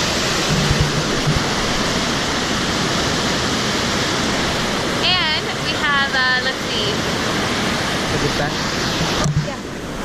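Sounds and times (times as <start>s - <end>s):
low bumps: 0.0s - 2.7s
waterfall rushing: 0.0s - 10.0s.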